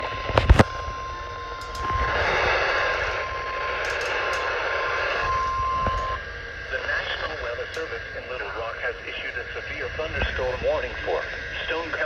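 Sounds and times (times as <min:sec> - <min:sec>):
heavy radio static: 0:00.0 - 0:12.0
radio warning alarm tone: 0:00.0 - 0:12.0.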